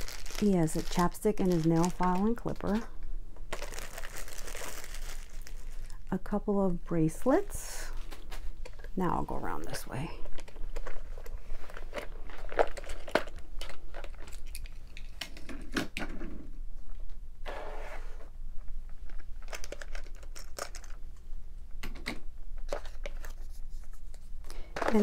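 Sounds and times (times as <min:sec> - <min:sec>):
packaging crinkling and rustling: 0:00.0 - 0:06.1, 0:10.2 - 0:15.8, 0:19.0 - 0:21.0, 0:22.6 - 0:25.0
plastic toys clicking and knocking: 0:19.4 - 0:21.0.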